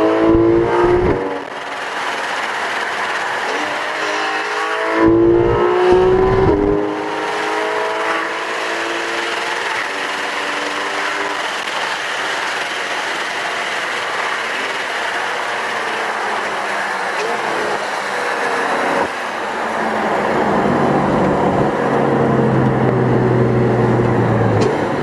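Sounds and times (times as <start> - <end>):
wind noise: 0.0 - 7.3
car engine accelerating hard: 0.0 - 25.0
road noise: 0.0 - 25.0.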